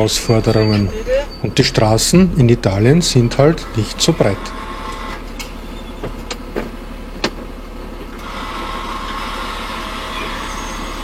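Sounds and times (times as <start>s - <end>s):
truck engine and road noise: 0.0s - 11.0s.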